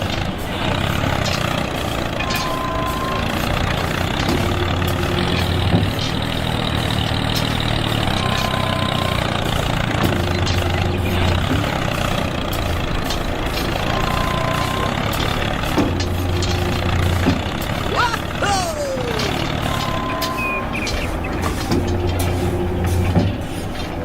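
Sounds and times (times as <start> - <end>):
mechanical running noise: 0.0 - 17.9
short high tone: 18.0 - 20.7.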